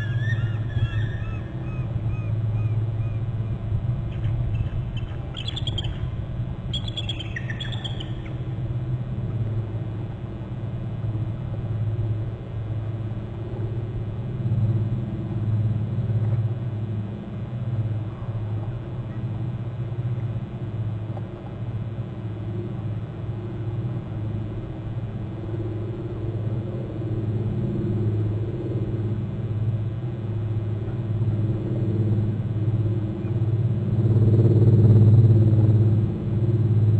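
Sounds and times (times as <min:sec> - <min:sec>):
eagle chirping calls: 0:00.0 - 0:03.5, 0:04.1 - 0:08.4
steady low rumble: 0:00.0 - 0:36.9.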